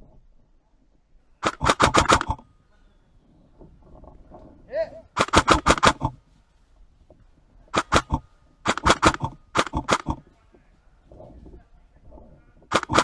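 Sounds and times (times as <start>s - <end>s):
airsoft guns firing bursts: 1.4s - 2.5s, 5.2s - 6.2s, 7.7s - 10.3s, 12.7s - 13.0s.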